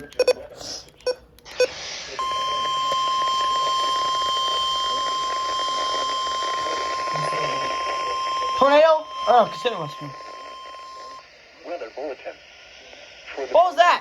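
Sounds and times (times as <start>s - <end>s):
radio hiss: 0.0s - 14.0s
steady high alert tone: 1.6s - 11.2s.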